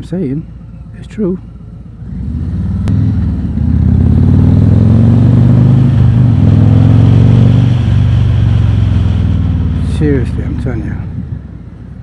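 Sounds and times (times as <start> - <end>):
motorcycle engine accelerating: 1.9 - 10.2.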